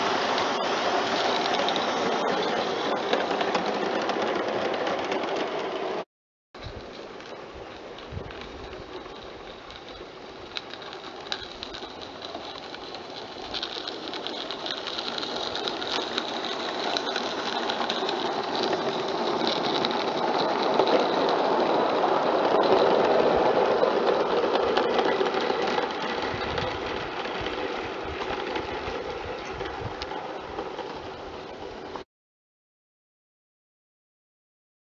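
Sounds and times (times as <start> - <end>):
model steam locomotive running past: 0.0 - 6.0, 6.6 - 32.0.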